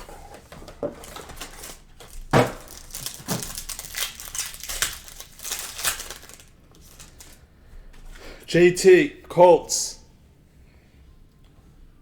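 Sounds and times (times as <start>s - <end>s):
plastic wrapping crinkling and tearing: 1.0s - 7.4s.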